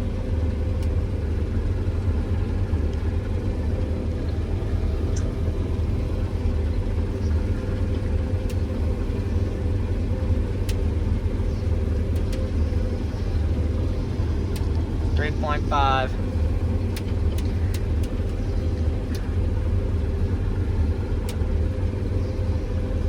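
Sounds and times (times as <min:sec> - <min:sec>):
combine harvester drone: 0:00.0 - 0:23.0
faint ticks: 0:07.2 - 0:09.3, 0:10.6 - 0:13.5, 0:16.8 - 0:19.4.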